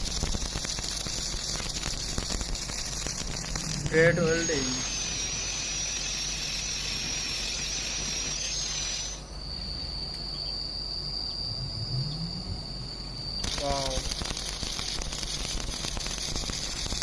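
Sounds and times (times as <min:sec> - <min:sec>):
welding arc hissing sizzle: 0:00.0 - 0:09.2, 0:13.4 - 0:17.0
thin high whine: 0:00.0 - 0:17.0.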